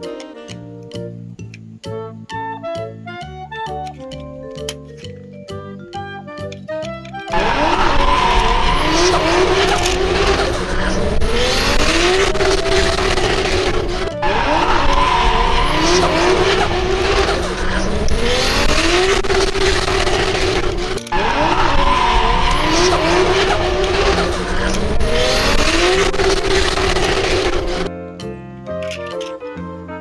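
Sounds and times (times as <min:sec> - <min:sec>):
race car engine revving: 0:07.3 - 0:27.9
tyre squeal and skidding: 0:07.3 - 0:27.9.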